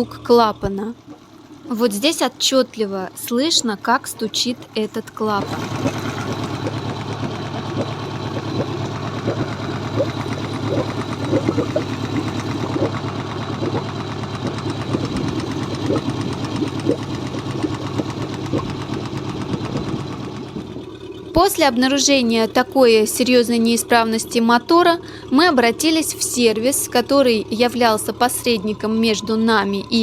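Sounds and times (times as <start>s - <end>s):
outboard engine running: 0.0s - 30.0s
rapid valve knocking: 3.8s - 21.6s.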